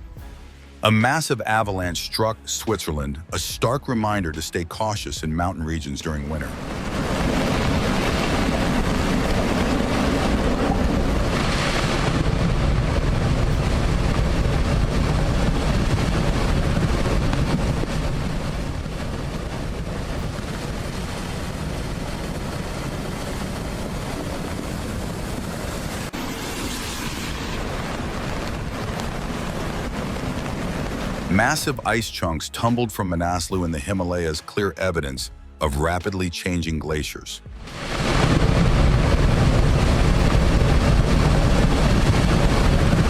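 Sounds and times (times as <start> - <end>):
avalanche low rumble: 6.3 - 34.0, 37.4 - 43.0
wind buffeting microphone: 6.5 - 31.3, 37.5 - 43.0.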